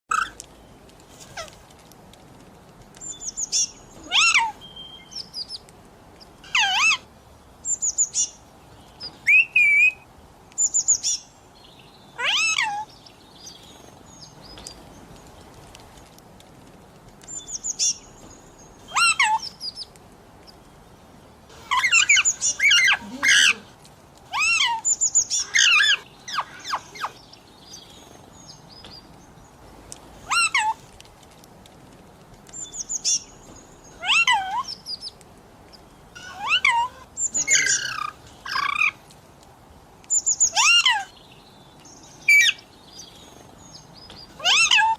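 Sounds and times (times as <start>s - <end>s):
parrot calling and chirping: 0.1s - 0.5s, 3.0s - 5.6s, 6.4s - 8.4s, 9.0s - 10.0s, 12.1s - 12.9s, 18.8s - 19.9s, 21.5s - 28.0s, 30.2s - 30.9s, 33.9s - 35.2s, 36.1s - 39.0s, 40.1s - 41.2s, 42.2s - 42.7s, 44.2s - 44.9s.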